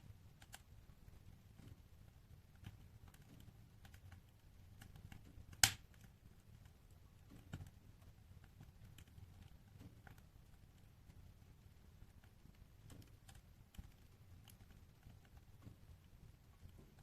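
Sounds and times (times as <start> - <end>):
wood fire crackling: 0.0 - 17.0
fire popping: 5.5 - 6.0.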